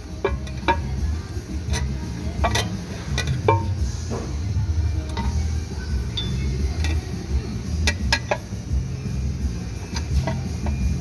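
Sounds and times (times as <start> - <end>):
steady low hum: 0.0 - 11.0
metal tools and bolts clinking: 1.7 - 3.8, 6.1 - 7.1.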